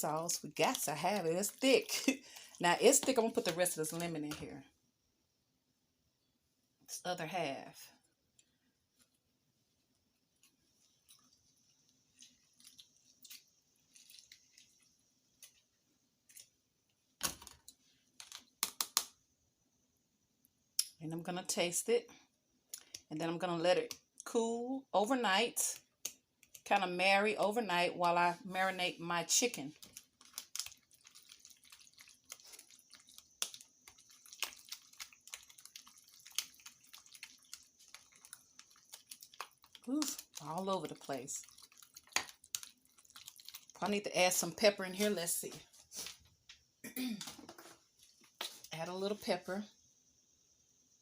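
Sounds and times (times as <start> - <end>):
utensil squelching in thick sauce: 29.8 - 43.8.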